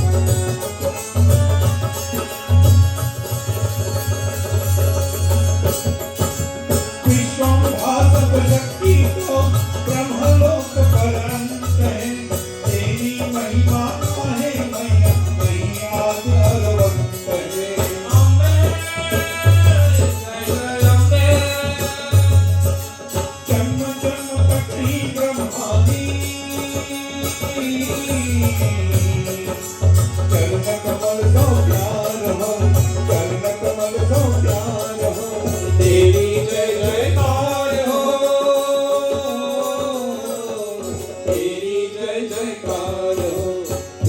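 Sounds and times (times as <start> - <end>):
devotional melody: 0.0 - 44.0.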